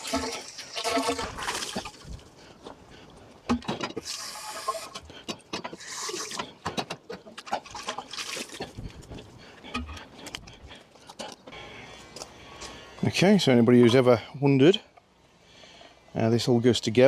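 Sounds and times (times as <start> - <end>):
water splashing in plastic container: 0.0 - 2.2, 7.3 - 9.0.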